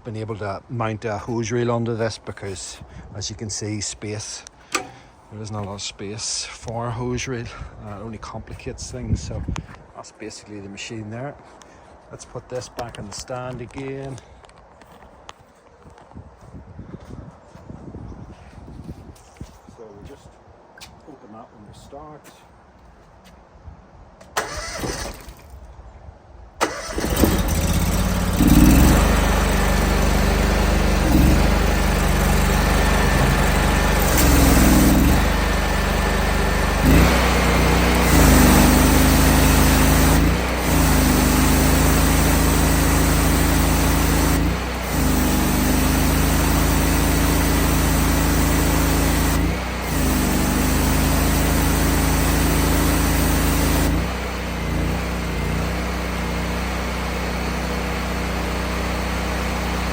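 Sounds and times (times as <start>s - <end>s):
petrol engine running: 24.4s - 25.3s, 26.6s - 59.9s.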